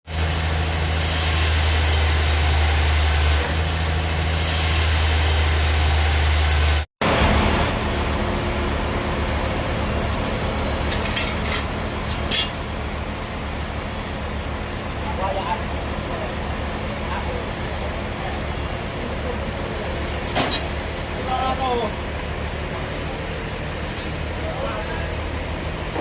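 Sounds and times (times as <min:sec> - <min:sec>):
bandsaw machinery drone: 0:00.1 - 0:26.0
low machine rumble: 0:07.0 - 0:26.0.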